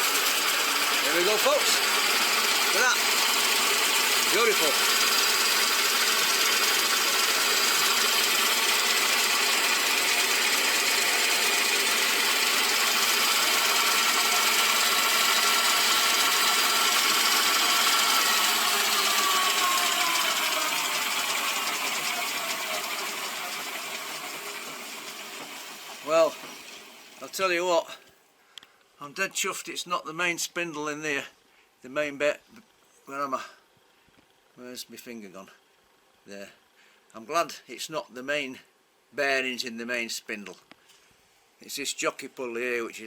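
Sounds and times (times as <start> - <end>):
milling machine motor running: 0.0 - 27.3.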